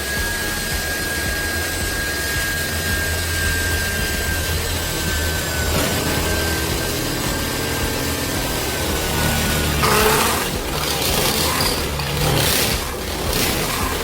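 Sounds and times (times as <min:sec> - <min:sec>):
electric drill motor whining: 0:00.0 - 0:14.0.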